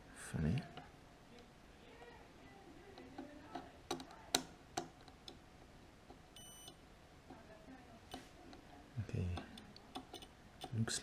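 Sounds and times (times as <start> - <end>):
test probes tapping and clicking: 2.9 - 7.4, 9.3 - 11.0.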